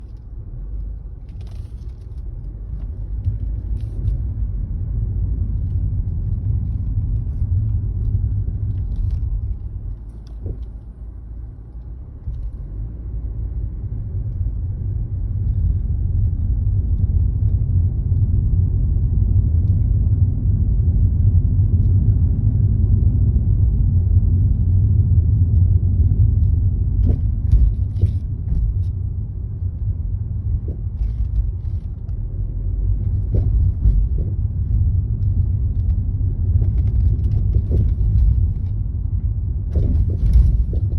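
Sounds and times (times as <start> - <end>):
car road noise: 0.0 - 40.9
suspension knocks: 26.9 - 28.9, 32.8 - 35.4, 39.6 - 40.9.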